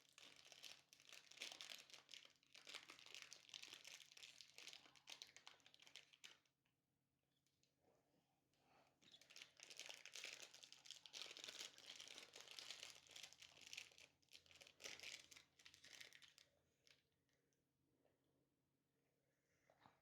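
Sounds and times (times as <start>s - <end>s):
thin plastic crinkling: 0.0s - 6.4s, 9.0s - 17.0s.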